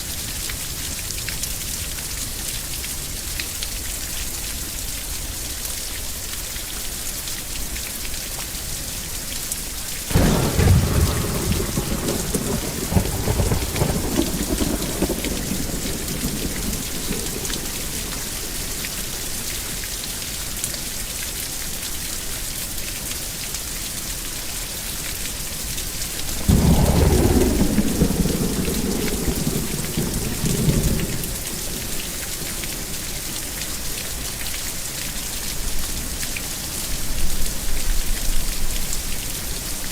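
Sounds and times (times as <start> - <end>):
heavy rain falling: 7.4 - 39.9
thunder rumbling: 10.1 - 19.9, 26.1 - 34.2.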